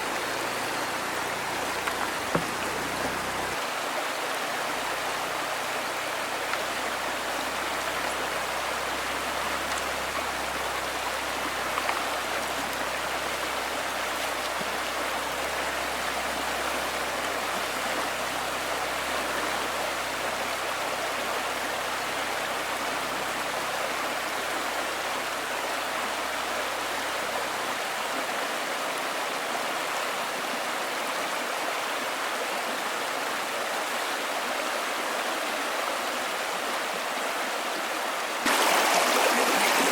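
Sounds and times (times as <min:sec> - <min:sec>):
rushing water hiss: 0:00.0 - 0:39.9.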